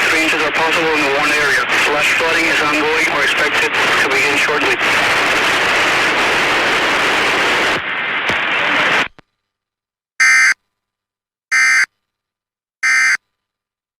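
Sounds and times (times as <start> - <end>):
radio hiss: 0.0 - 9.1.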